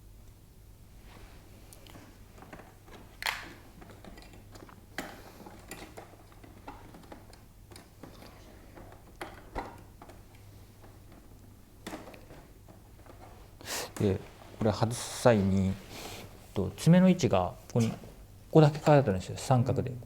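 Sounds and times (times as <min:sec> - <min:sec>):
plastic parts clicking and knocking: 0:01.8 - 0:14.7.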